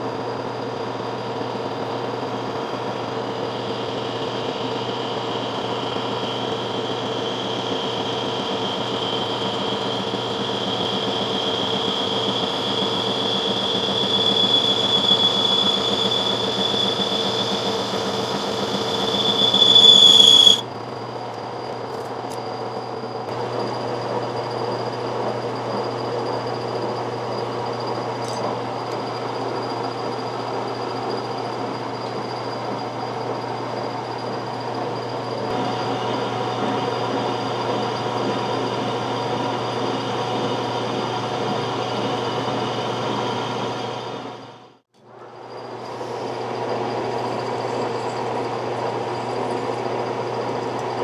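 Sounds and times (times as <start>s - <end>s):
motor hum with high whine: 0.0s - 51.0s
milling machine cutting steel: 2.5s - 20.6s, 35.5s - 44.6s.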